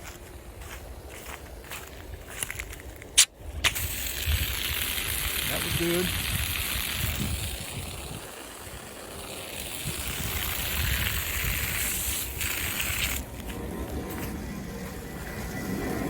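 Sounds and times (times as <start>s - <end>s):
wind rumble on microphone: 0.0s - 16.0s
water running from hose bib: 3.7s - 13.4s.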